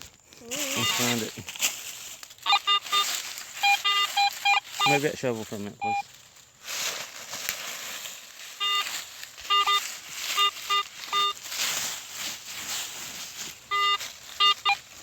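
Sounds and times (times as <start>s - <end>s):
rustling and scraping: 0.0s - 15.0s
metal detector beeps: 0.6s - 1.3s, 2.4s - 5.2s, 5.8s - 6.1s, 8.5s - 11.5s, 13.6s - 15.0s.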